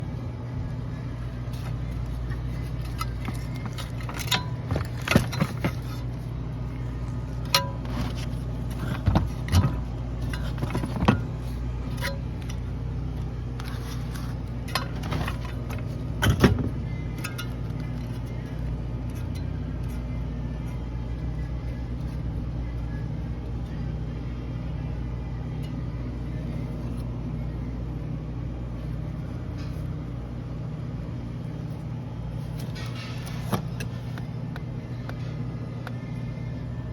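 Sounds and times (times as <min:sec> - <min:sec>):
refrigerator hum: 0:00.0 - 0:36.9
fan motor clicks and knocks: 0:01.4 - 0:23.8, 0:32.4 - 0:36.2.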